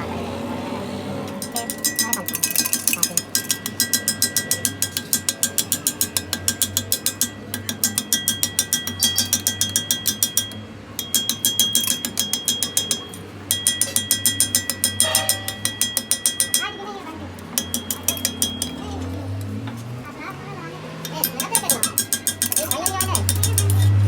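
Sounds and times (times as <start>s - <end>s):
rapid metallic ticking: 1.3s - 19.7s, 21.0s - 24.0s
ringing tone: 7.2s - 18.8s.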